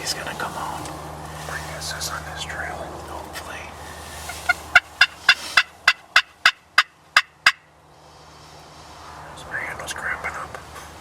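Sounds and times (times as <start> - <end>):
turkey call yelps: 4.2 - 7.7.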